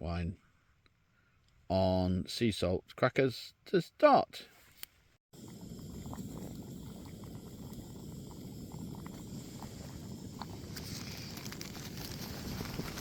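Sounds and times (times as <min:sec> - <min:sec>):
crackly rustle: 0:10.4 - 0:13.0.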